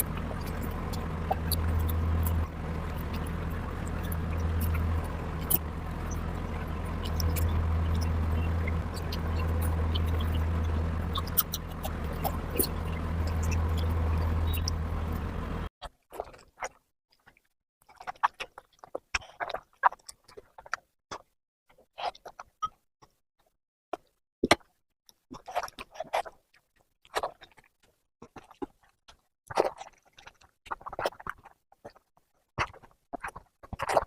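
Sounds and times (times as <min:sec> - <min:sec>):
mouth clicks: 0:00.0 - 0:15.7
steady low hum: 0:00.0 - 0:15.7
wet eating smacks: 0:00.1 - 0:14.8, 0:29.5 - 0:32.0.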